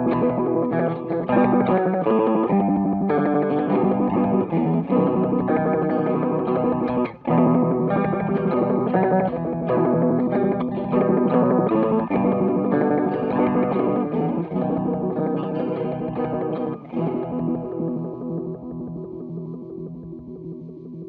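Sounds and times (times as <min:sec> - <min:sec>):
electric guitar with flanger: 0:00.0 - 0:21.0.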